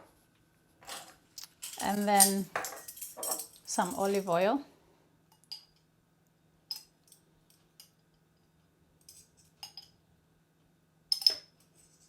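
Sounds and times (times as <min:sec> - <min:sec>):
kitchen utensils clinking: 0:00.9 - 0:04.4.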